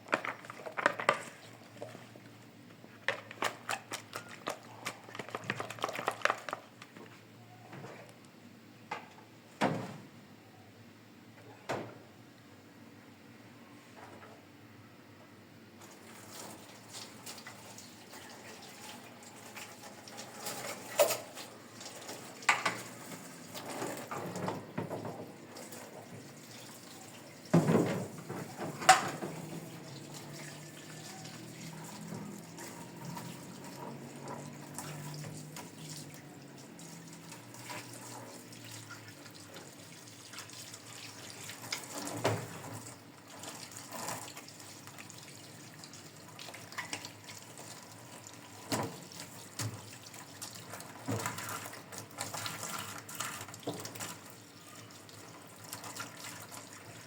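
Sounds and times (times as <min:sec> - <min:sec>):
water running from a tap: 0:25.4 - 0:57.0.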